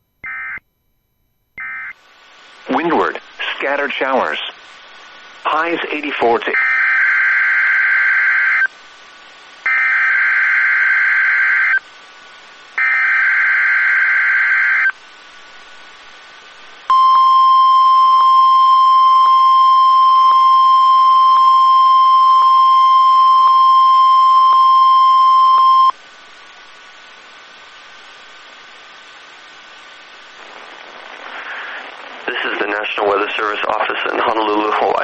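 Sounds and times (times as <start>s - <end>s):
steady warning alarm tone: 12.8s - 14.9s.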